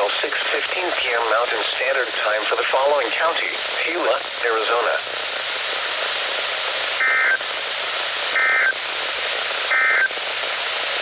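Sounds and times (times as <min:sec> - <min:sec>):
steady radio hiss: 0:00.0 - 0:11.0
warbling data bursts: 0:08.4 - 0:08.8, 0:09.7 - 0:10.1.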